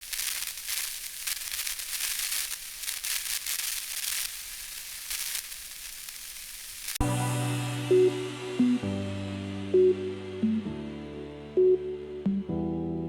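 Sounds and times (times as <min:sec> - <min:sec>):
crackling hissy rustle: 0:00.0 - 0:07.0.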